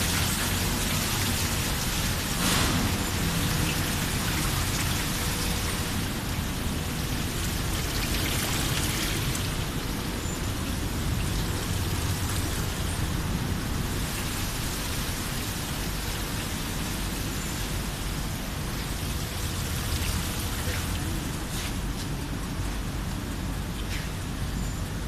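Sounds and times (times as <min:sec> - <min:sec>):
washing machine running: 0:00.0 - 0:25.0.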